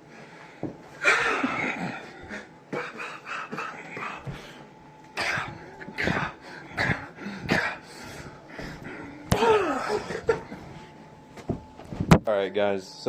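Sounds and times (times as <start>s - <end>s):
man coughing: 1.0s - 4.4s, 5.2s - 8.3s, 9.2s - 10.6s.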